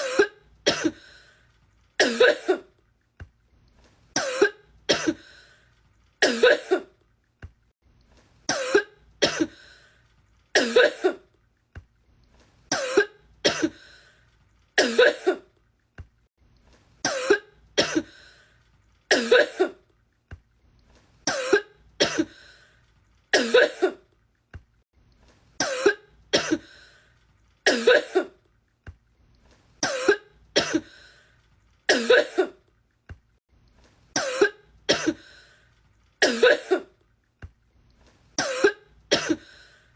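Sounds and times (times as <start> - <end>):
woman coughing: 0.0 - 1.0, 2.0 - 2.7, 4.2 - 5.2, 6.2 - 6.9, 8.5 - 9.6, 10.6 - 11.2, 12.7 - 13.8, 14.8 - 15.5, 17.1 - 18.1, 19.1 - 19.8, 21.3 - 22.4, 23.4 - 24.1, 25.6 - 26.7, 27.7 - 28.4, 29.8 - 30.9, 31.9 - 32.6, 34.2 - 35.2, 36.2 - 37.0, 38.4 - 39.5.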